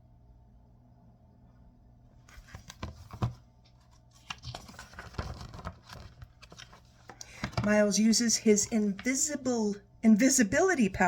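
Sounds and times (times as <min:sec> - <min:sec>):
book pages turning: 0:02.2 - 0:07.9
paper rustling with taps: 0:02.3 - 0:07.8.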